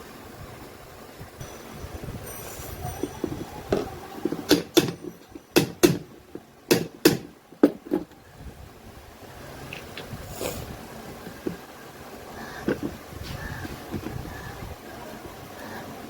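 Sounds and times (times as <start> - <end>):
sharp knocks: 3.7 - 8.2.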